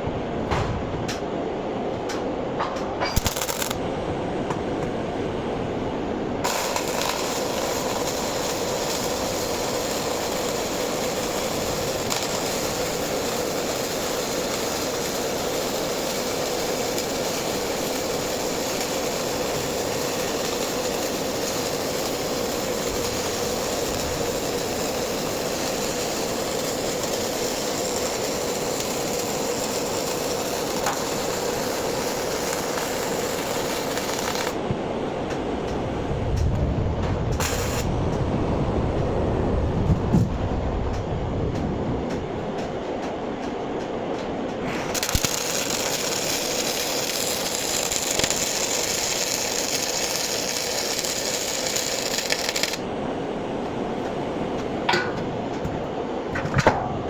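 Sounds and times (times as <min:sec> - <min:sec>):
welding arc crackling: 0:03.0 - 0:03.8, 0:06.4 - 0:34.7, 0:35.7 - 0:38.4, 0:44.6 - 0:52.9.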